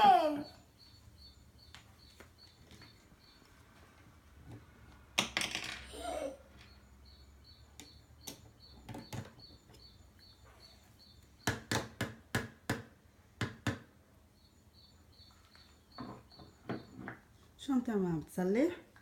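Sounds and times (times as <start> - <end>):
faint high chirp: 0.0 - 3.5, 6.0 - 11.6, 14.4 - 17.1.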